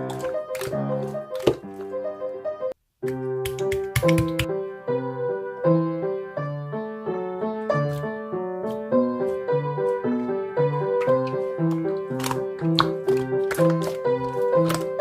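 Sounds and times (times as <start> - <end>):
solo piano: 0.0 - 15.0.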